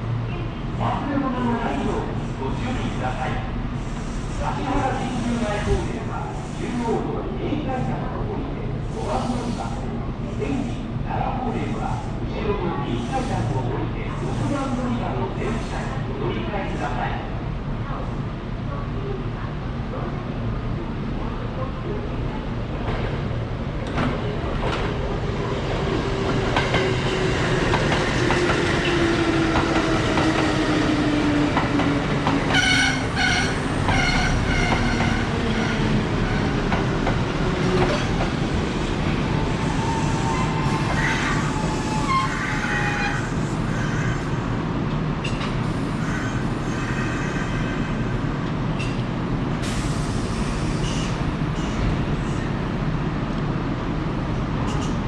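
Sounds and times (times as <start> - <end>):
wheels rumbling on rail: 22.1 - 55.0
train horn blasts: 32.5 - 35.8.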